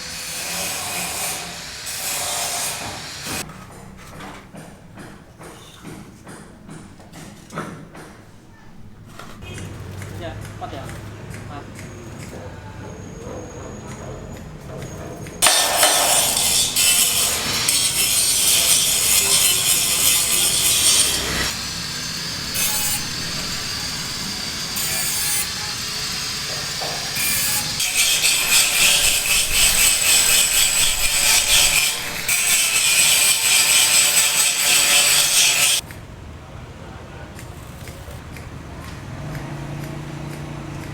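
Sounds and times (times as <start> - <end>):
construction tool hissing and scraping: 0.0 - 3.5, 15.4 - 35.8.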